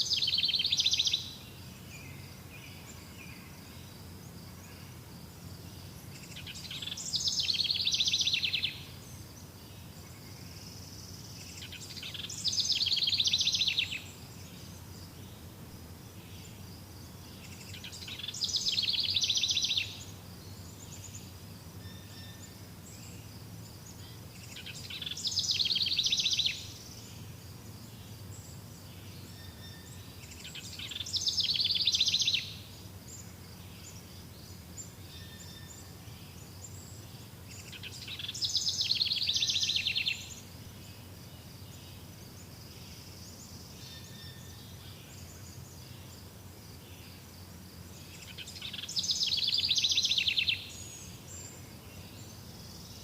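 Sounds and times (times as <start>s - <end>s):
songbird singing with trill: 0.0s - 53.0s.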